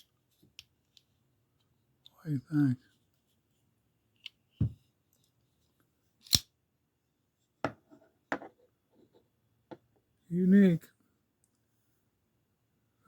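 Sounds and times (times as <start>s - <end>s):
pocket knife clicking open and shut: 6.2s - 6.5s.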